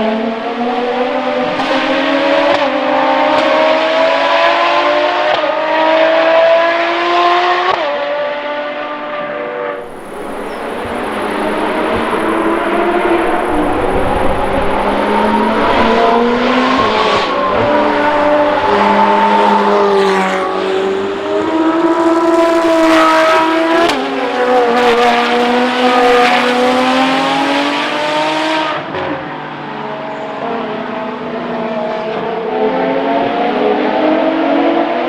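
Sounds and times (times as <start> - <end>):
racing car engine revving: 0.0 - 29.3.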